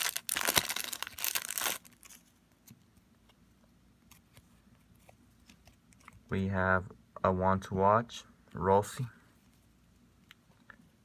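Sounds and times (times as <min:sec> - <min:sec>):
wrapper tearing and crinkling: 0:00.0 - 0:02.2.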